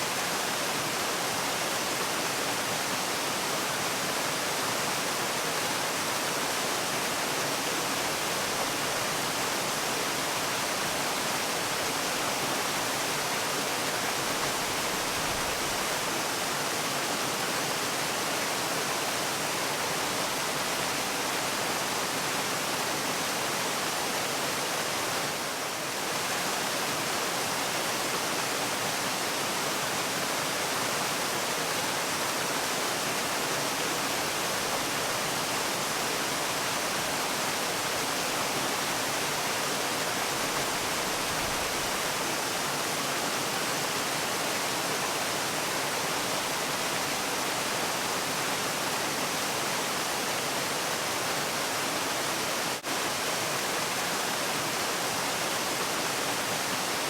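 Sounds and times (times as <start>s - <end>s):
waterfall rushing: 23.4s - 57.0s.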